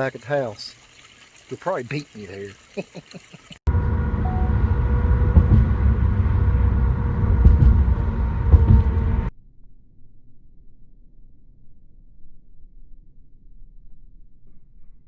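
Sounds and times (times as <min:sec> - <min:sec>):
vehicle engine and road rumble: 0:03.6 - 0:09.3
steady hum: 0:03.7 - 0:09.3.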